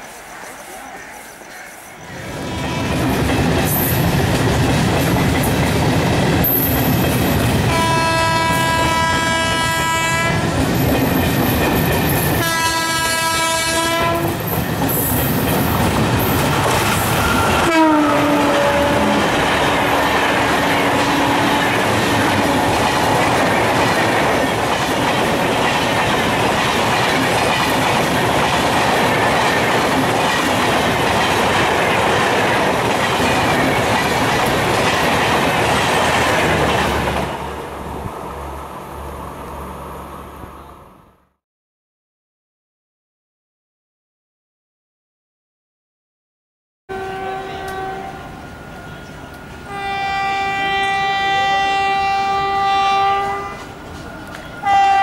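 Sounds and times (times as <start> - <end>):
train rumble and clickety-clack: 0.0 - 38.9, 47.1 - 55.0
train horn blasts: 2.4 - 3.1, 7.7 - 10.5, 12.4 - 14.4, 17.6 - 22.8, 46.9 - 48.4, 49.7 - 53.8, 54.6 - 55.0.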